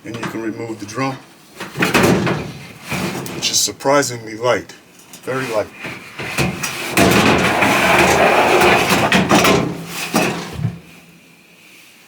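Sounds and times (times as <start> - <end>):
metal drum scraping and rattling: 1.6 - 3.7, 5.0 - 10.9.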